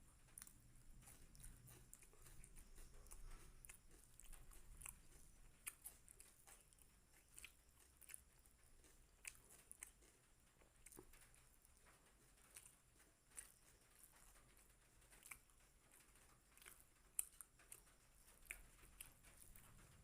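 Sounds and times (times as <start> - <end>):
faint chewing: 0.0 - 20.0
wet mouth clicks: 0.3 - 11.4.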